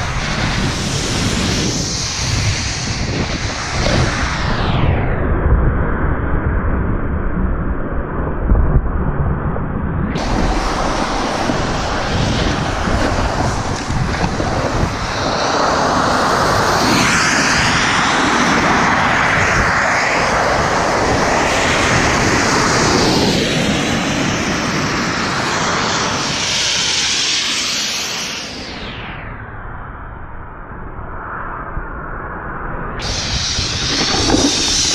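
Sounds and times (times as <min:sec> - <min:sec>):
wind rushing over microphone: 0:00.0 - 0:34.9
snowboard scraping across snow: 0:10.2 - 0:17.0, 0:33.0 - 0:34.9.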